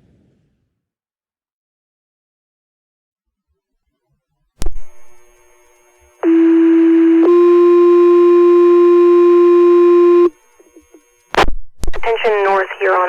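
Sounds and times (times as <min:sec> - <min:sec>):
two-tone radio page tones: 0:06.2 - 0:10.4.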